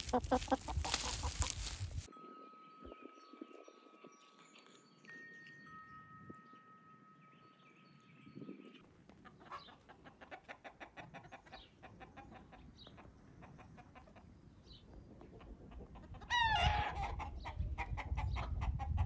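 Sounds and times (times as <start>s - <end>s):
chickens clucking faintly: 0.0s - 2.0s, 8.9s - 14.6s.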